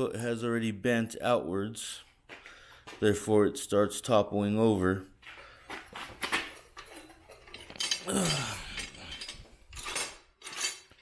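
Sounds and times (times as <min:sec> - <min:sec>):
metal stand clinking and rattling: 0:06.2 - 0:11.0.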